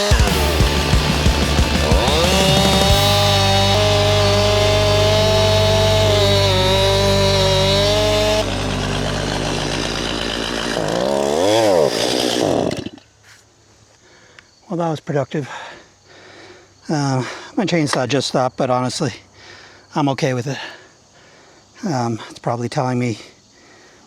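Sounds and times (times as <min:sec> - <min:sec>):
chainsaw cutting logs: 0:00.0 - 0:13.1.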